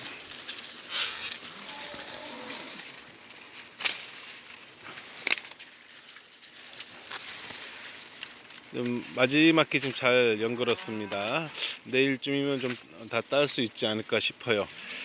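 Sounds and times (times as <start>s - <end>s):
corn husks crackling and rustling: 0.0s - 15.0s.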